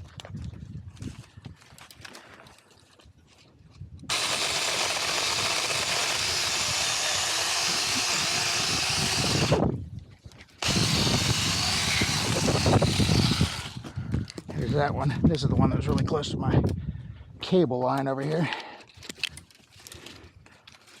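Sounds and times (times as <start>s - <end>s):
electric chainsaw cutting branch: 4.1s - 9.7s, 10.6s - 13.8s.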